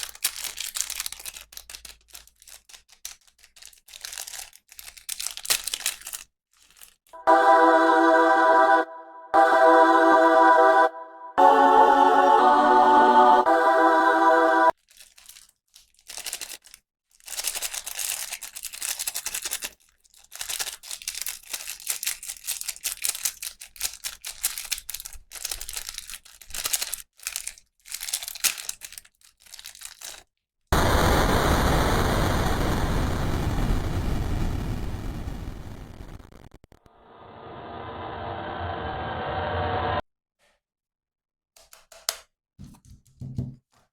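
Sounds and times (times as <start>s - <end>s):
packaging rustling and crinkling: 0.0s - 7.2s, 14.7s - 30.4s
short musical jingle: 7.2s - 14.7s
loud steady rushing noise: 37.0s - 40.0s.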